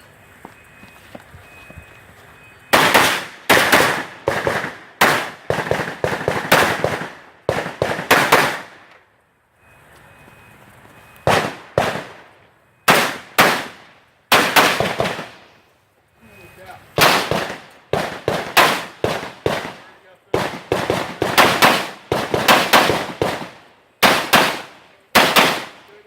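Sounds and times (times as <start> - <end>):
rifle shots: 2.7 - 8.8, 11.2 - 12.3, 12.9 - 15.5, 17.0 - 26.0.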